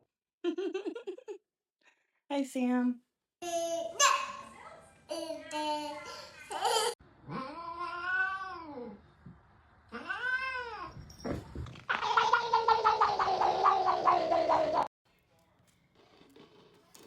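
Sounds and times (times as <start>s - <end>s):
cat yowling: 7.3s - 9.0s.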